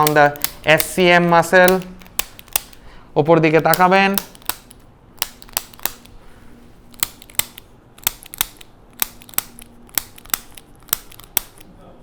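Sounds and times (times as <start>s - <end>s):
adjusting instrument clicking: 0.0s - 6.2s, 6.9s - 11.7s.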